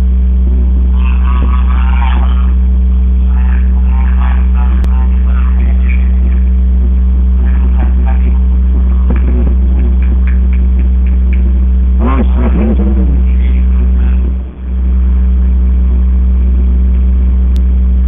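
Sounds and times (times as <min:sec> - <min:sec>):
low electrical hum: 0:00.0 - 0:18.0
person calling out: 0:10.2 - 0:14.6.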